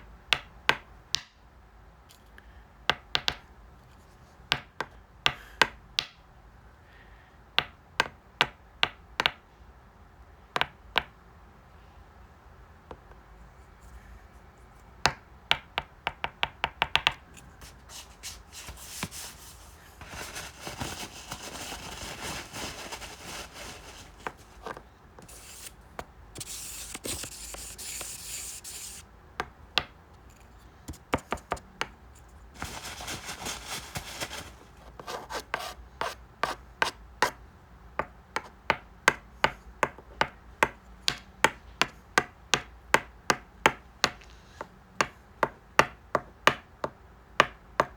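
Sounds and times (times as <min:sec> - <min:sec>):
rubbing or scraping noise: 0:17.3 - 0:29.0, 0:32.2 - 0:36.6.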